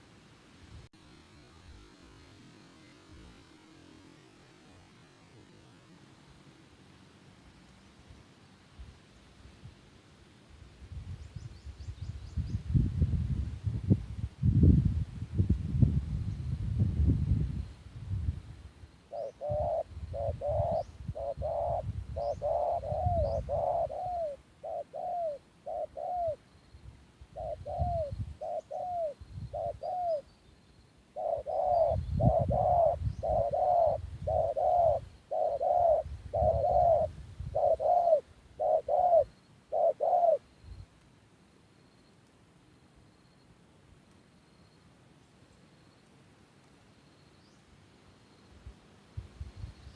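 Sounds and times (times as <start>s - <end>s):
dove cooing: 19.1s - 26.4s, 27.3s - 30.3s, 31.2s - 40.4s.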